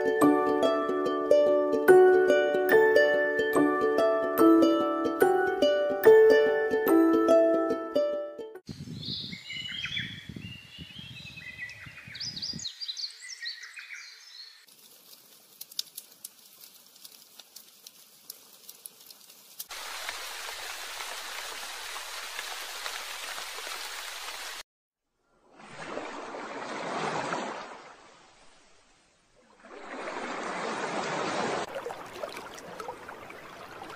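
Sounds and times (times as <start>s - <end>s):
birds chirping: 8.7s - 14.7s
faint sparse crackling: 14.7s - 19.7s.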